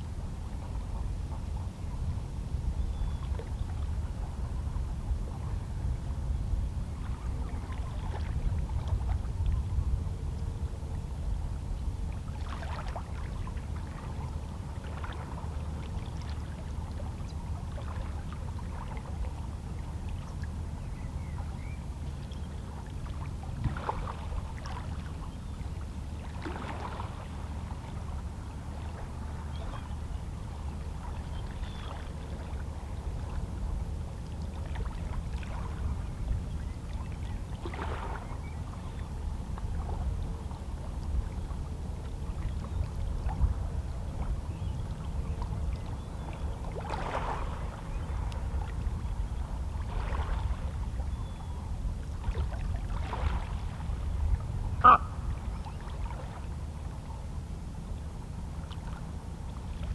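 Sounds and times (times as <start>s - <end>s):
waves lapping against rocks: 52.2s - 55.4s.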